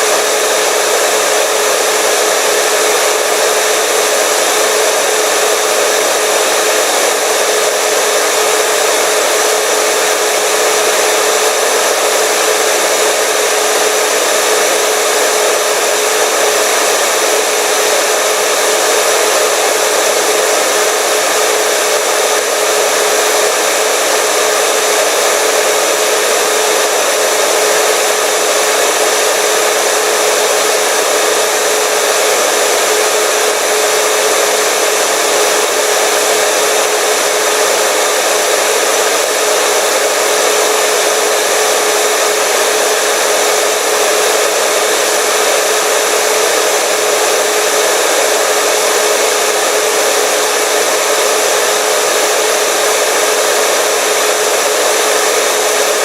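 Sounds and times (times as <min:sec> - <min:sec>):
hair dryer running: 0:00.0 - 0:56.0.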